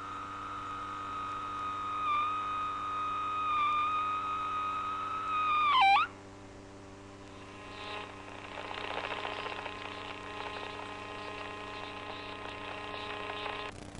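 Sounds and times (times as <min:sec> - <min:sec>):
electrical hum: 0:00.0 - 0:13.9
static crackle: 0:07.2 - 0:13.9.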